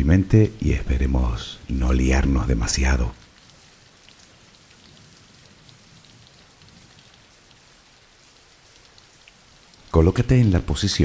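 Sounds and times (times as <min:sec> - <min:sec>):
soft rain falling: 0:00.0 - 0:11.0
drops ticking: 0:02.2 - 0:10.6.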